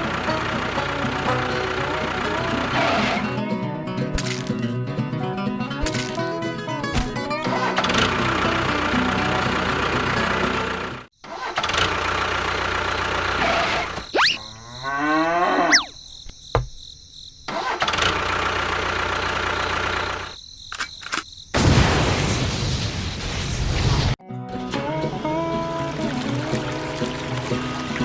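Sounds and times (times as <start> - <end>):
engine running and starting: 0.0 - 3.5, 6.9 - 14.0, 17.5 - 20.4.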